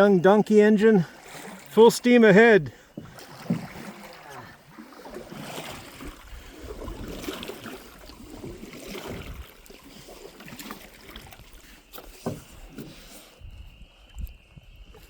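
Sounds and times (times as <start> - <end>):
paddle splashing in water: 0.3 - 13.5.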